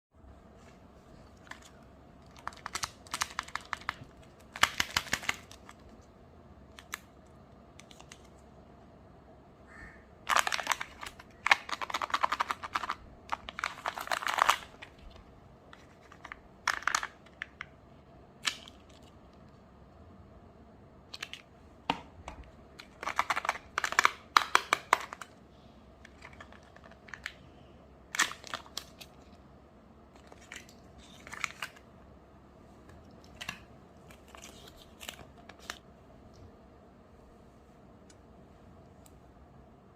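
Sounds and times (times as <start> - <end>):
foil wrapper crinkling and tearing: 2.3 - 5.8, 10.3 - 15.0.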